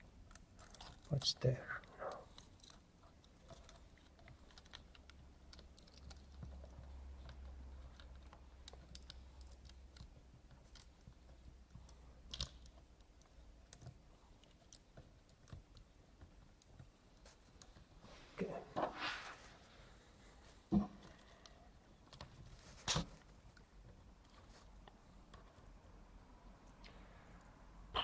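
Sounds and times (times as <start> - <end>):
tiny screws clicking and tapping: 2.3 - 17.9.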